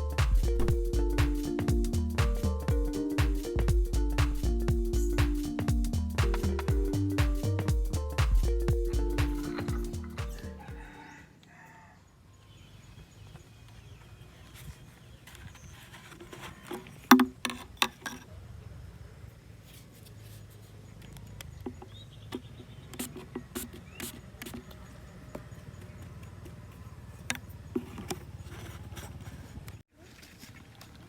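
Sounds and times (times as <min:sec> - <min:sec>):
low steady hum: 0:00.0 - 0:10.8.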